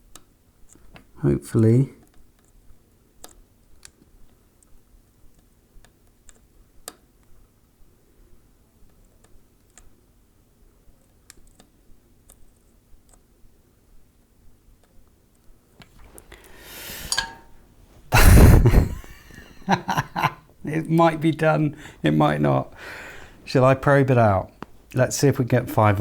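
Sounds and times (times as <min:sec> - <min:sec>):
small soldering clicks and taps: 0:00.1 - 0:01.1, 0:03.2 - 0:07.4, 0:08.8 - 0:10.0, 0:11.0 - 0:13.3.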